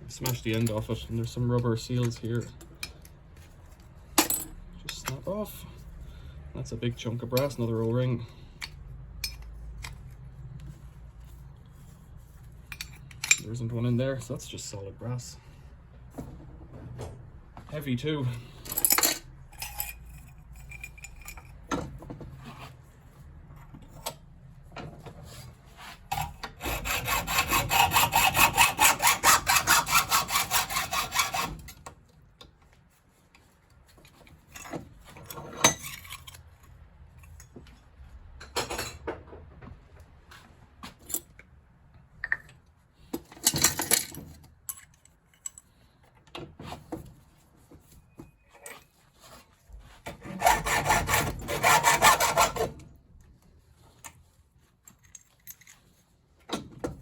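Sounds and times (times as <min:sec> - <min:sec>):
saw cutting metal: 0:26.1 - 0:31.6, 0:50.2 - 0:52.8.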